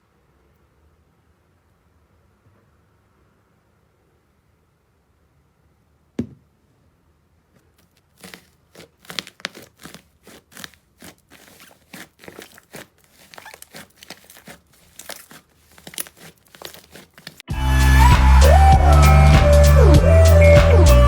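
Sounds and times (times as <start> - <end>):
slime crackling and popping: 7.8 - 17.5.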